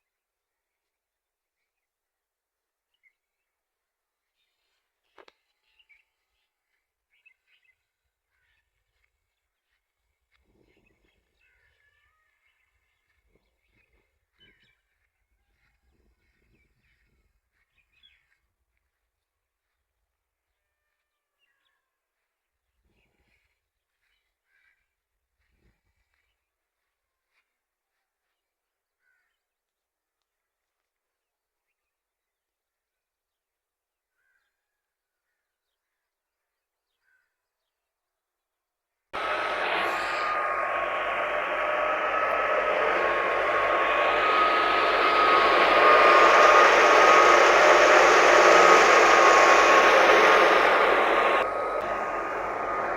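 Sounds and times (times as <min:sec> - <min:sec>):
loud mechanical noise with whine: 0:39.2 - 0:52.9.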